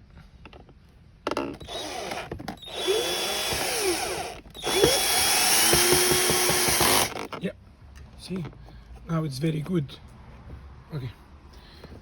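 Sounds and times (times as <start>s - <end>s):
cordless drill driving screws: 1.6s - 7.3s.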